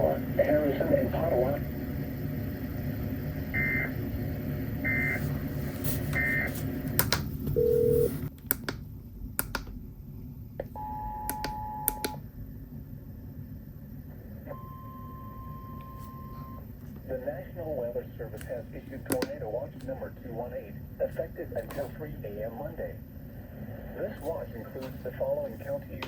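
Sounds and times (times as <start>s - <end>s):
radio hiss: 0.0s - 6.9s, 15.9s - 26.0s
two-tone attention signal: 3.6s - 3.9s, 14.5s - 16.6s
scattered clicks: 6.9s - 7.3s, 8.3s - 8.8s, 9.4s - 9.8s
low beep: 14.5s - 16.6s.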